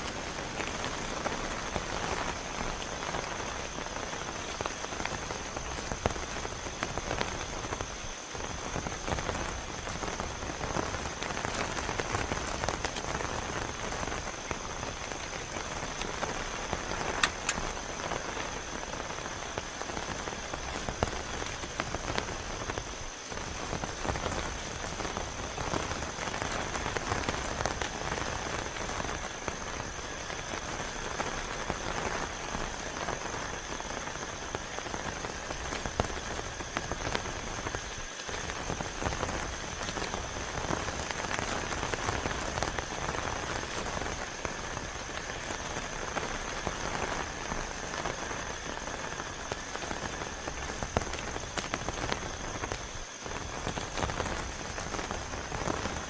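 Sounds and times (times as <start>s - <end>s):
heavy rain: 0.0s - 56.0s
sharp clicks: 17.2s - 17.7s.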